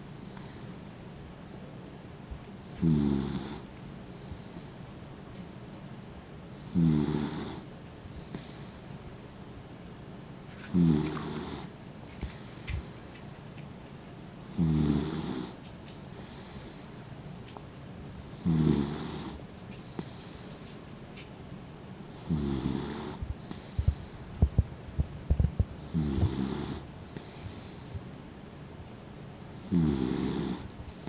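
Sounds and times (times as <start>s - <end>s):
dog snoring: 2.8s - 4.5s, 6.6s - 7.7s, 10.6s - 11.7s, 14.5s - 15.6s, 18.4s - 20.6s, 22.1s - 24.6s, 25.8s - 27.9s, 29.6s - 31.0s.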